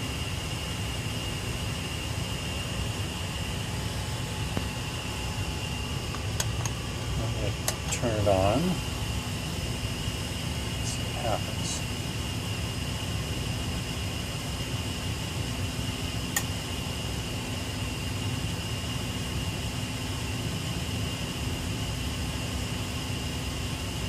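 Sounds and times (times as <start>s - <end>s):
fan-like mechanical hum: 0.0s - 24.0s
sharp click: 16.3s - 16.5s.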